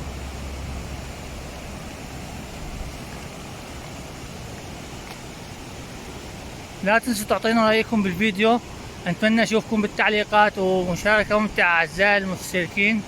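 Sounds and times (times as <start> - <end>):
low vehicle hum: 0.0 - 6.7
waterfall rushing: 0.0 - 13.0.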